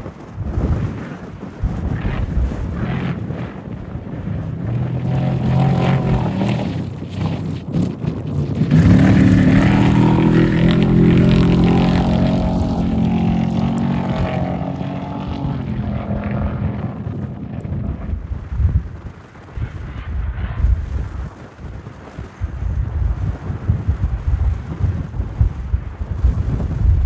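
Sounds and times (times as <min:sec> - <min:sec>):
race vehicle engine passing: 0:04.6 - 0:07.4, 0:08.7 - 0:18.3.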